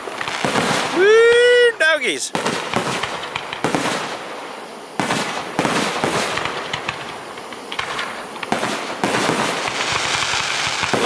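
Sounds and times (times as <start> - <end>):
fireworks bangs: 0.0 - 11.0
fireworks crackle: 0.0 - 11.0.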